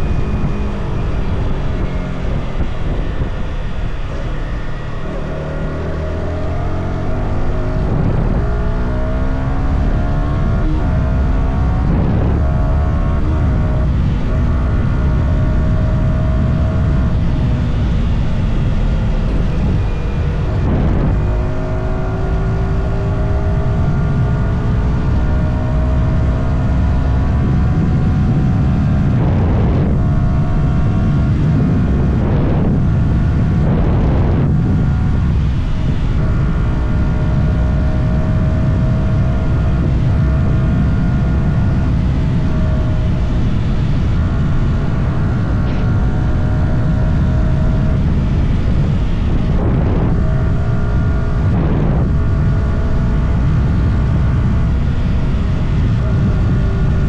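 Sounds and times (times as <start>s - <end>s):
low rushing noise: 0.0s - 57.0s
motorcycle engine running: 0.0s - 57.0s.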